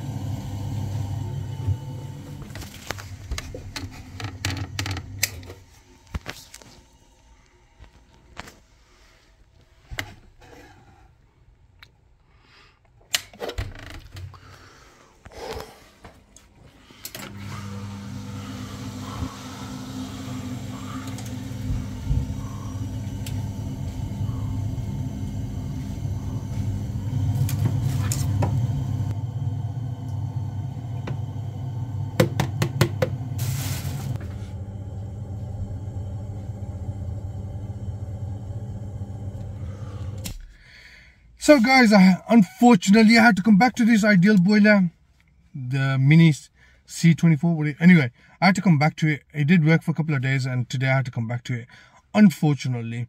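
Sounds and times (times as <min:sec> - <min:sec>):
boiler low hum: 0:00.0 - 0:08.6, 0:16.8 - 0:40.9.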